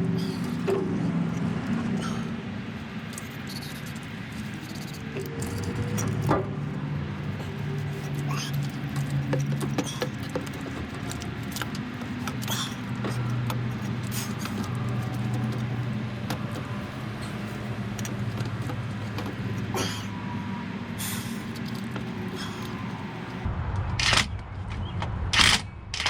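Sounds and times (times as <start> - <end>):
low engine hum: 0.0 - 26.0
hand tools clicking on metal: 7.3 - 20.1.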